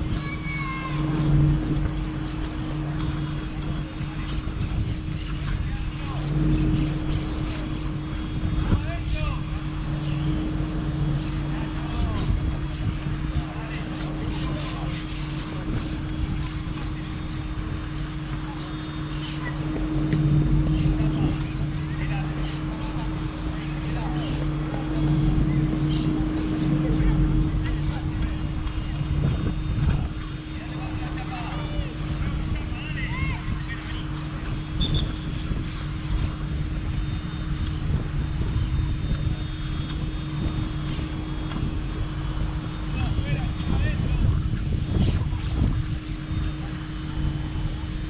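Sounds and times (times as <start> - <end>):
distant voices calling: 0.0 - 37.9
faint distant sounds: 0.0 - 48.0
low mechanical hum: 0.0 - 48.0
rushing noise: 0.0 - 48.0
wind buffeting microphone: 0.0 - 48.0.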